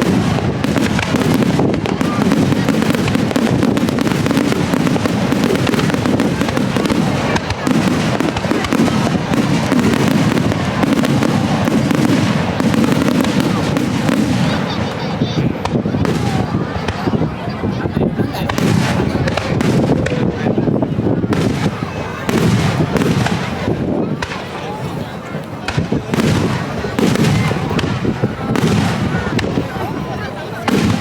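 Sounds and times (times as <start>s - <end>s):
firework shells bursting: 0.0s - 17.0s
fireworks crackling and popping: 0.0s - 31.0s
wind buffeting microphone: 0.0s - 31.0s.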